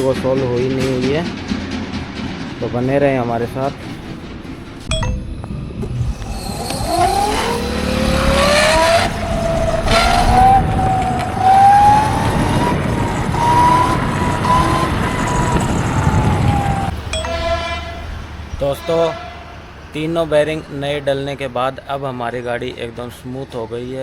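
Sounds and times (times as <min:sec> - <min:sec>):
road rumble: 0:00.0 - 0:24.0
wind: 0:00.0 - 0:24.0
electric scooter motor whine: 0:05.8 - 0:17.0.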